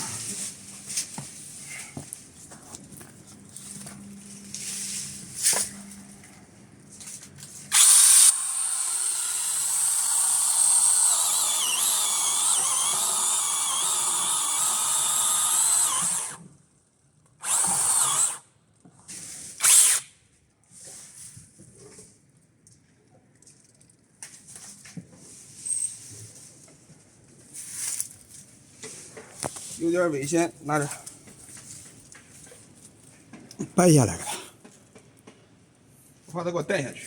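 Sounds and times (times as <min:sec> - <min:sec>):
electric chainsaw cutting wood: 0:07.7 - 0:16.4, 0:17.4 - 0:18.4.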